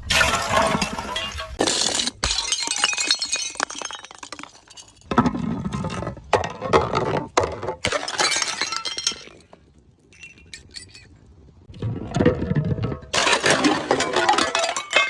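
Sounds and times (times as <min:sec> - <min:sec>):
glass bottles breaking: 0:00.1 - 0:11.2, 0:12.9 - 0:15.0
glass shards crunching and clinking: 0:01.1 - 0:05.1, 0:07.8 - 0:11.2, 0:13.2 - 0:15.0.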